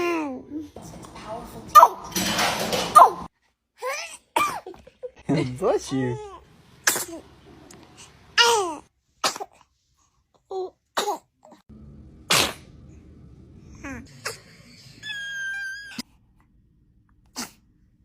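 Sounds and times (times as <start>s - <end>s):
babies sneezing: 6.8s - 7.2s, 8.4s - 9.6s.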